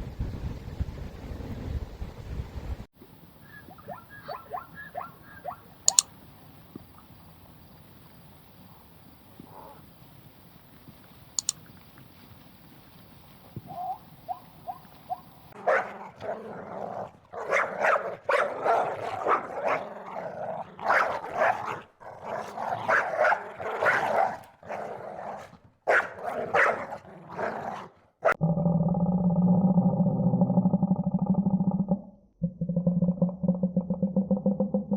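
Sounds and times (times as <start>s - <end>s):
dog barking: 3.4s - 6.0s, 13.7s - 16.8s, 17.4s - 19.9s, 20.8s - 28.4s
dog yipping: 3.4s - 6.0s, 13.7s - 15.9s.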